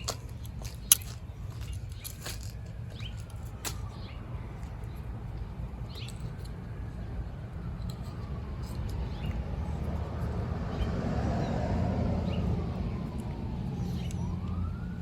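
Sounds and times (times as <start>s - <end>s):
light clicks and handling noises: 0.0s - 6.8s, 7.7s - 10.0s.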